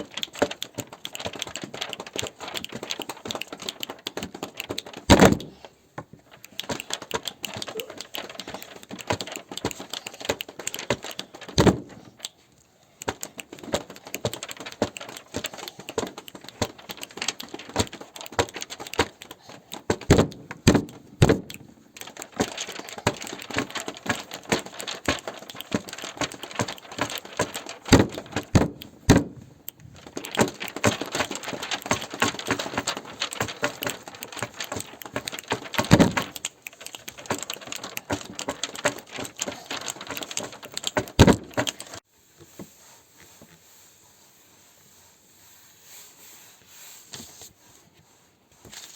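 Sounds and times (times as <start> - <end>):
tapping and clicking on hard objects: 13.0 - 42.0.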